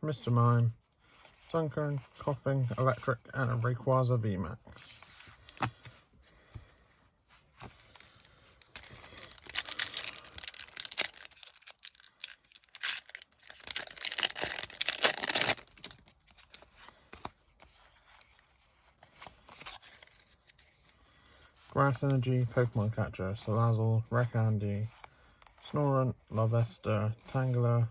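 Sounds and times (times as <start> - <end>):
foil wrapper tearing and crinkling: 8.6 - 16.6.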